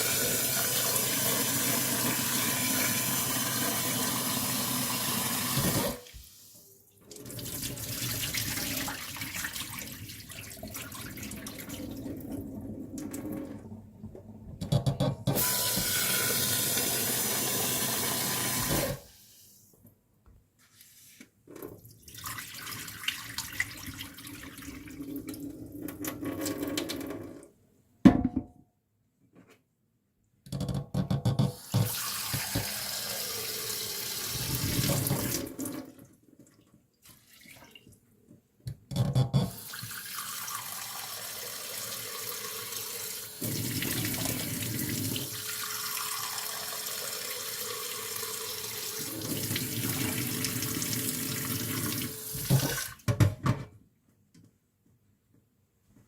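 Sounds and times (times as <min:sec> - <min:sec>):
tap water running into sink: 0:00.0 - 0:06.3, 0:14.6 - 0:19.0, 0:31.5 - 0:35.9, 0:39.4 - 0:53.3.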